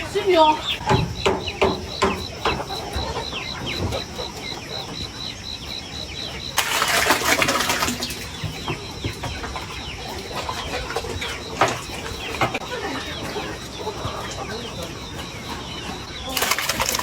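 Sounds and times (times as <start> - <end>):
chickens clucking: 0.0 - 17.0
wings flapping: 6.5 - 8.6, 16.3 - 17.0.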